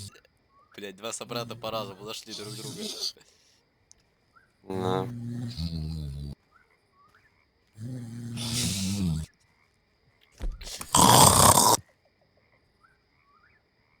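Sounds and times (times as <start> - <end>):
person snoring: 2.3 - 3.1, 4.7 - 6.4, 7.8 - 9.3, 10.6 - 11.8.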